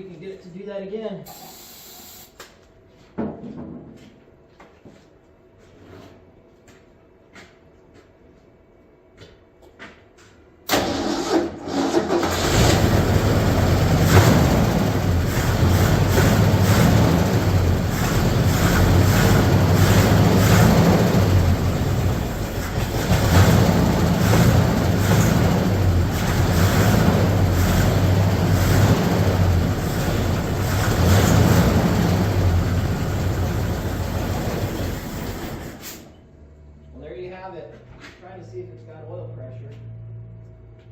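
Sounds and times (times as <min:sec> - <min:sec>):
car engine cranking and starting: 0:10.7 - 0:36.1.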